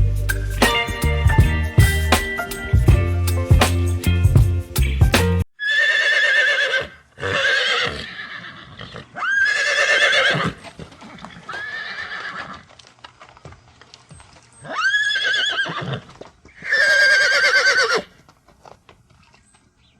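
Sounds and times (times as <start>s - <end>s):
music: 0.0s - 5.4s
horse whinnying: 5.6s - 12.7s, 14.6s - 18.2s.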